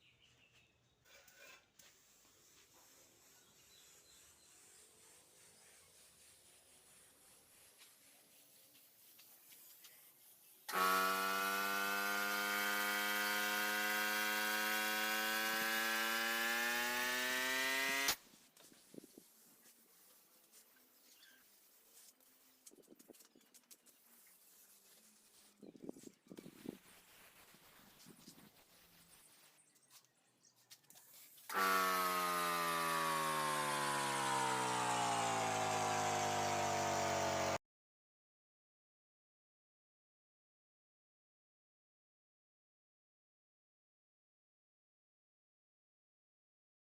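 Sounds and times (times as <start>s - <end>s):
power tool motor running: 10.7s - 18.2s, 31.5s - 37.6s.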